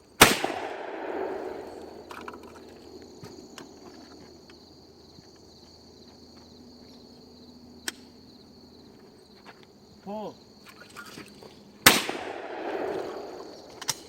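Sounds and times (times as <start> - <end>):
insects chirring: 0.0 - 14.0
shotgun blast echo: 0.2 - 3.8, 11.8 - 14.0.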